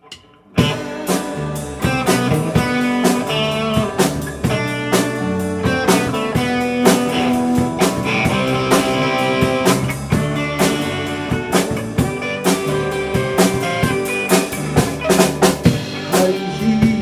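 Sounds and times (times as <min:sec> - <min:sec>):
instrumental band music: 0:00.0 - 0:17.0.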